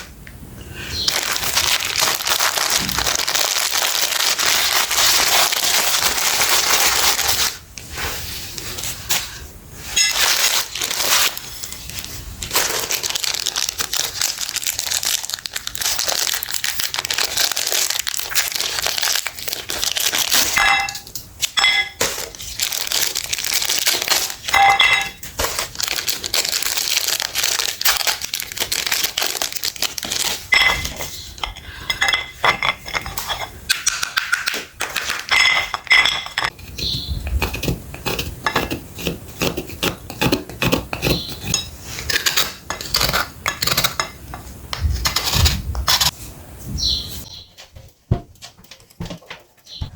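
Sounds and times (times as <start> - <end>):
meat grinder crunching: 1.1 - 7.6, 10.1 - 20.6, 22.0 - 24.6, 25.4 - 30.5.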